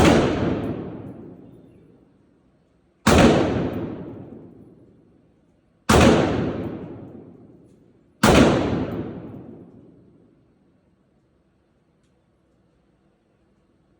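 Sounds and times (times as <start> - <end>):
gunshots: 0.0 - 1.6, 3.1 - 4.8, 5.9 - 7.6, 8.2 - 10.0.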